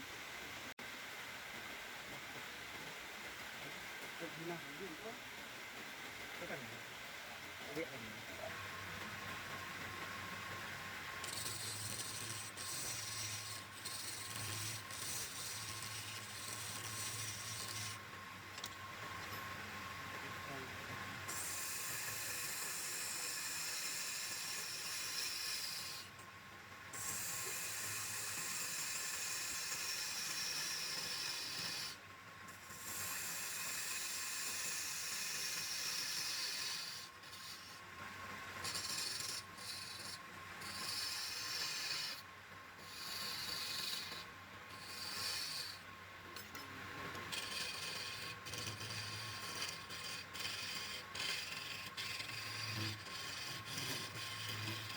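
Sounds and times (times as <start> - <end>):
wood being sanded: 7.8 - 18.1, 21.3 - 26.1, 27.0 - 37.8, 38.6 - 45.8, 47.3 - 54.9.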